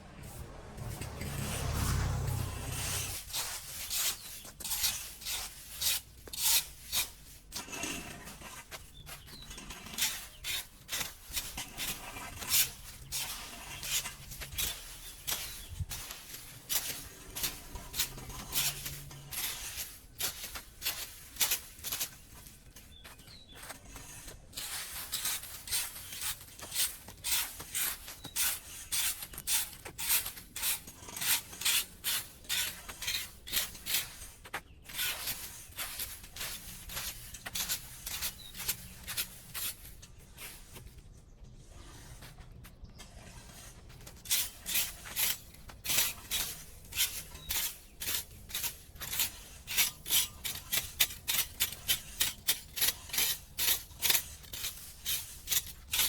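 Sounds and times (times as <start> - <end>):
hand tool scraping drain: 44.2 - 56.0.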